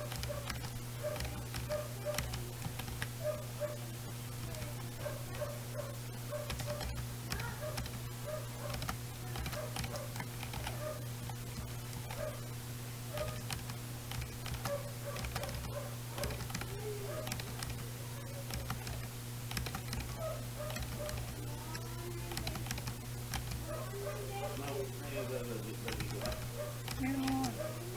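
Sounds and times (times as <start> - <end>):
keyboard key clicks: 0.0 - 3.2, 6.4 - 8.1, 8.7 - 12.4, 13.1 - 17.8, 18.4 - 23.7, 25.9 - 27.6
steady low hum: 0.0 - 27.9.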